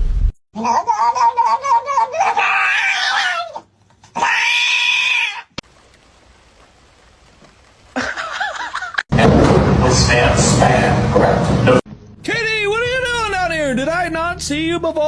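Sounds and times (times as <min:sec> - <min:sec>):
cat meowing: 0:01.4 - 0:05.5.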